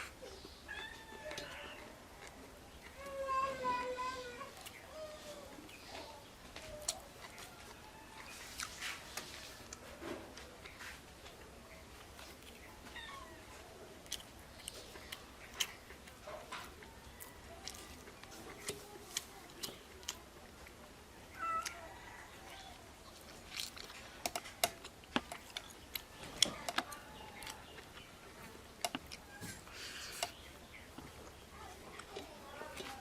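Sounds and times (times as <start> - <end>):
crunchy bites and chewing: 22.5 - 33.0
food clicking against plate: 23.6 - 28.0.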